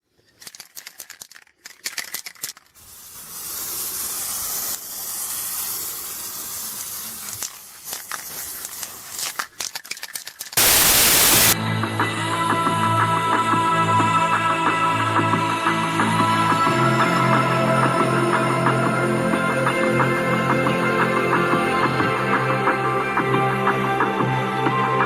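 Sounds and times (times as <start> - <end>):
metallic clicks and rattles: 0.3 - 2.8, 9.2 - 10.6
spraying hiss: 2.8 - 9.3, 10.6 - 11.6
burst of rushing noise: 10.6 - 11.6.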